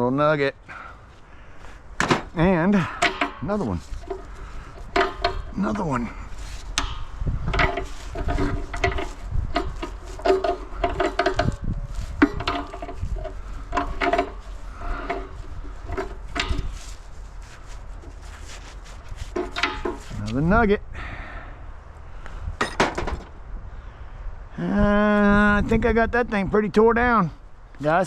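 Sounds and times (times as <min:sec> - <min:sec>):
metal knocks and scrapes: 0:02.0 - 0:20.4, 0:22.6 - 0:23.4.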